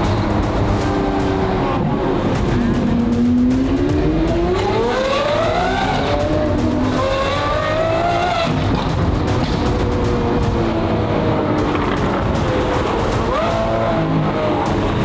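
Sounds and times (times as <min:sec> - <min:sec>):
car engine accelerating hard: 0:00.0 - 0:15.0.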